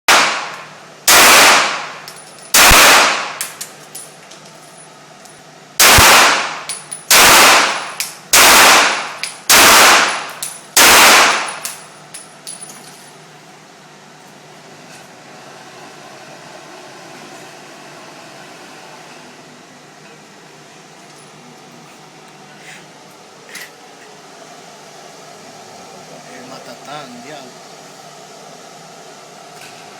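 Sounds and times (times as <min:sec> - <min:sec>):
gunshots with ringing echo: 0:01.1 - 0:02.0, 0:02.6 - 0:03.4, 0:05.8 - 0:11.6.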